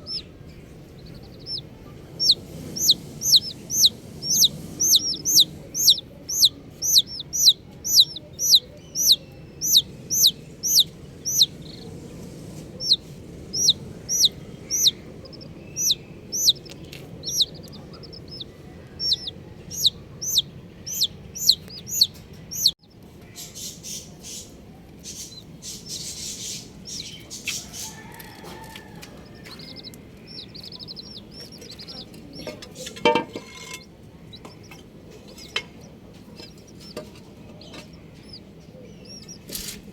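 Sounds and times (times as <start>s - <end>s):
baby chicks peeping: 0.0s - 39.9s.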